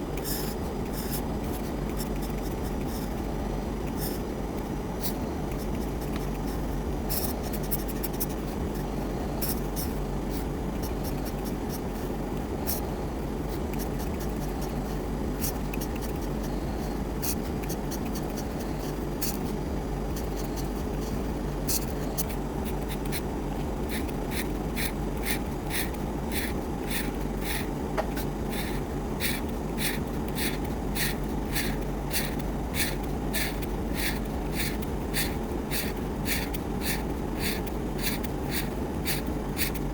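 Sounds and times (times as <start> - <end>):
steady low hum: 0.0 - 39.9
drawing tool scratching on paper: 23.9 - 39.9.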